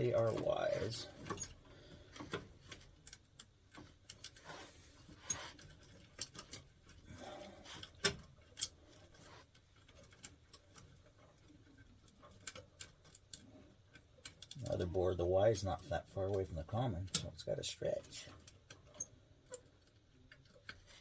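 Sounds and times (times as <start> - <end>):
light clicks and taps: 15.7 - 17.4.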